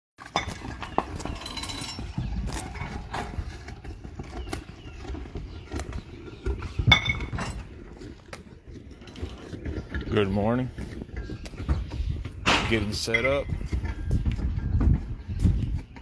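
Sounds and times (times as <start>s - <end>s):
knocks and clatter: 8.9s - 16.0s.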